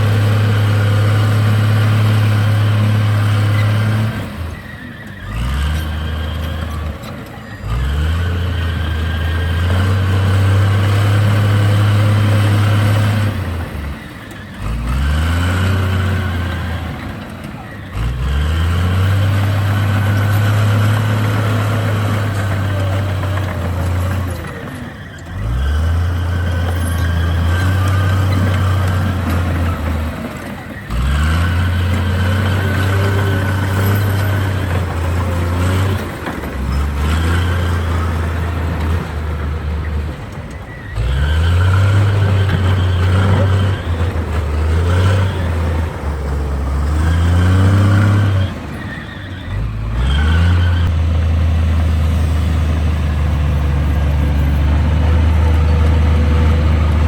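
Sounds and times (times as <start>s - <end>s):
bulldozer diesel engine revving: 0.0s - 57.0s.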